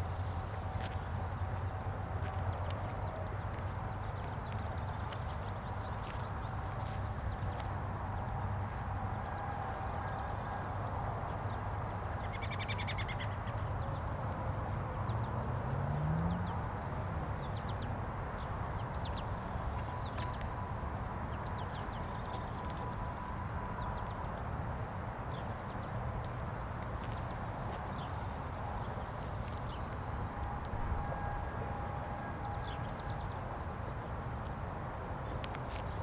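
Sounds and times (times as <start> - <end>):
low rumble of traffic: 0.0 - 36.0
distant warning sirens wailing: 6.3 - 12.5, 14.5 - 35.3
vehicle passing: 14.6 - 25.6.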